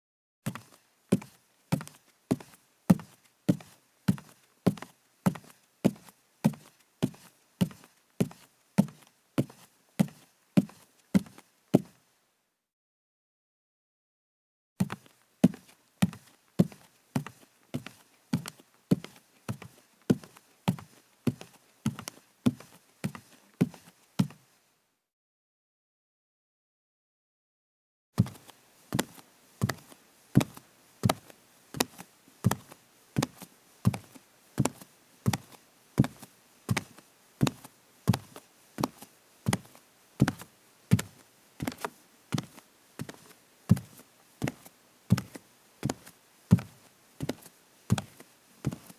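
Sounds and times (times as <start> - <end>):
barefoot footsteps on wooden floor: 28.2 - 48.9.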